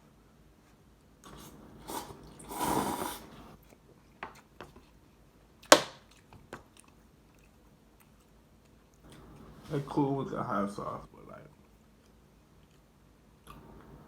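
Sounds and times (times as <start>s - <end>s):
person slurping noodles: 1.2s - 3.6s.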